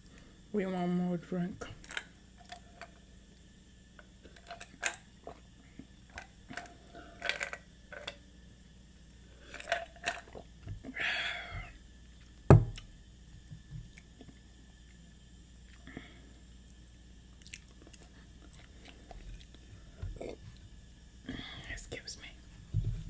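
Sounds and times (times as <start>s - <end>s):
heavy low thump: 12.5s - 12.8s
chewing clicks and lip smacks: 17.4s - 19.6s.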